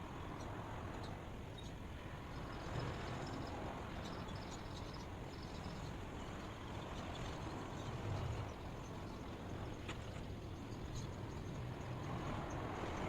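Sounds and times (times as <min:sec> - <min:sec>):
insects chirping: 0:02.4 - 0:13.0.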